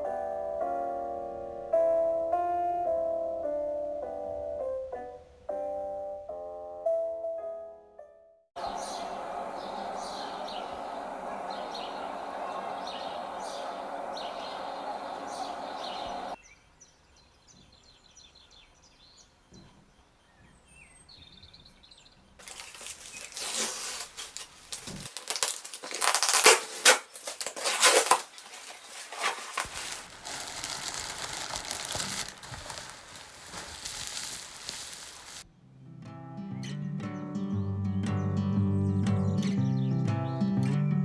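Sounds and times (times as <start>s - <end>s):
wrapping crinkling: 22.4s - 35.4s.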